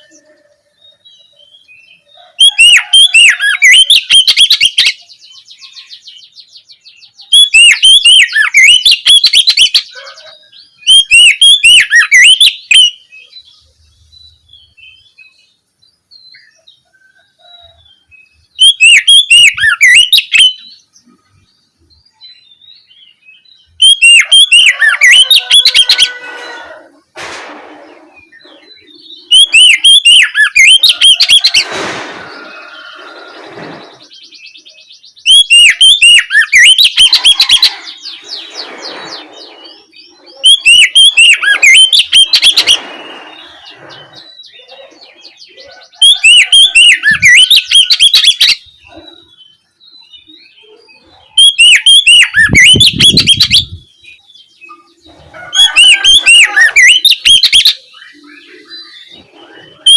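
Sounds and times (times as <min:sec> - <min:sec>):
bird singing sharp high notes: 0:07.1 - 0:10.0, 0:10.8 - 0:13.4, 0:18.6 - 0:20.9, 0:23.6 - 0:26.7, 0:27.9 - 0:44.7, 0:46.0 - 0:50.3, 0:51.4 - 0:59.9.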